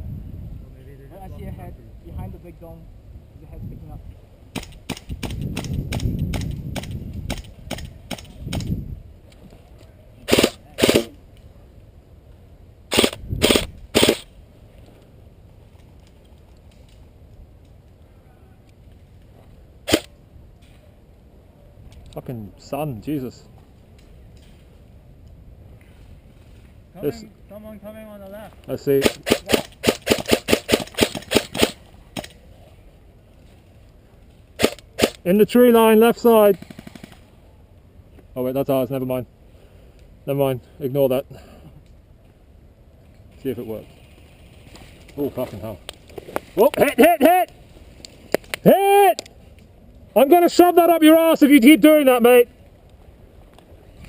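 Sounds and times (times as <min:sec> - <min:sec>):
airsoft gunshots: 0:10.3 - 0:11.1, 0:12.9 - 0:14.3, 0:19.9 - 0:20.1, 0:29.0 - 0:32.3, 0:34.6 - 0:35.2, 0:36.5 - 0:37.2.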